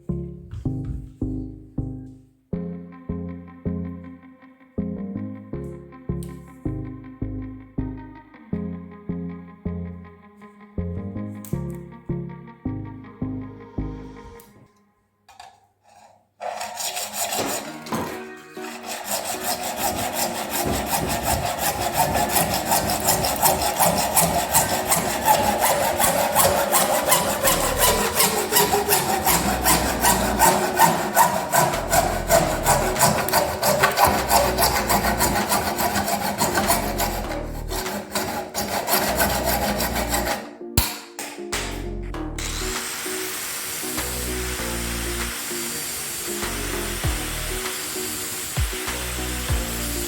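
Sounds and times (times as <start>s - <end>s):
hand saw cutting: 15.3s - 41.0s, 42.4s - 50.0s.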